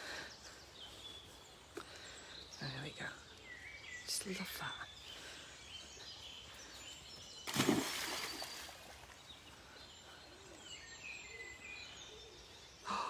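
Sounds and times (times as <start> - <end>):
wild birds chirping: 0.0 - 13.0.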